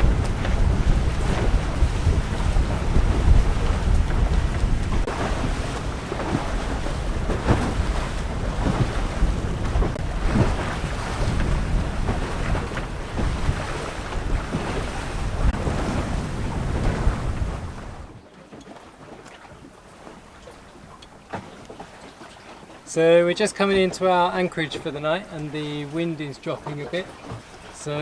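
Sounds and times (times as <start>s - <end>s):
wind buffeting microphone: 0.0s - 18.2s
water splashing along hulls: 0.0s - 28.0s.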